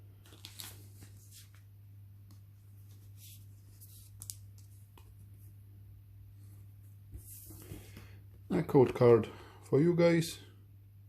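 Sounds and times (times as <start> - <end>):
trading cards rustling and clicking: 0.2 - 1.6, 2.3 - 5.2.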